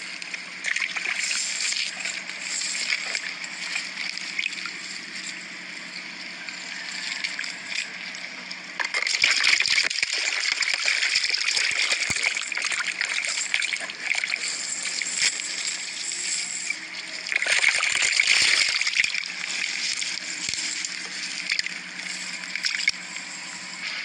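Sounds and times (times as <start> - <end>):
water splashing and sloshing: 8.8 - 15.8, 17.0 - 23.0.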